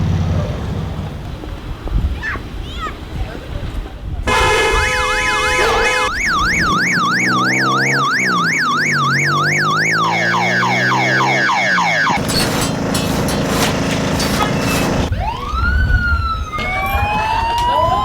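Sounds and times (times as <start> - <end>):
electronic siren: 4.3 - 12.2, 15.1 - 18.0.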